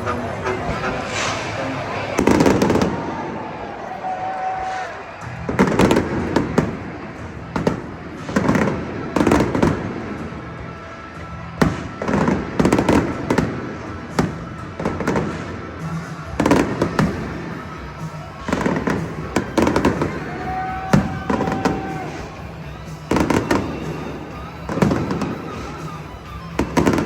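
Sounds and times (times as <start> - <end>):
fireworks bangs and booms: 0.0 - 3.8, 4.6 - 27.0.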